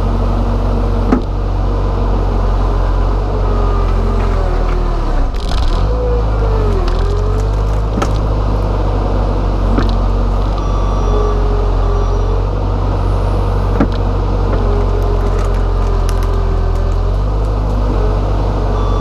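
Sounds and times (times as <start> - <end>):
diesel engine running with whine: 0.0 - 19.0
machine knocks and clunks: 1.1 - 1.4, 7.0 - 8.4, 9.7 - 10.6, 13.8 - 15.5.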